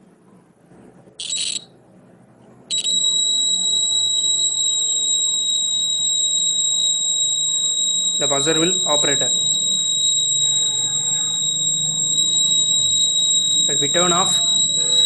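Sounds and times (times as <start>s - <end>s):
steady high-pitched tone: 1.2s - 1.7s, 2.7s - 15.0s
buzzer buzzing: 2.7s - 15.0s.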